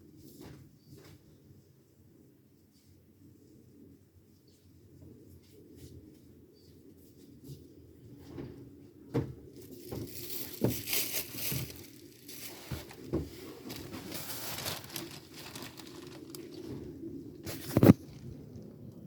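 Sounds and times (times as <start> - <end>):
laundry rustling and crinkling: 9.5 - 18.3.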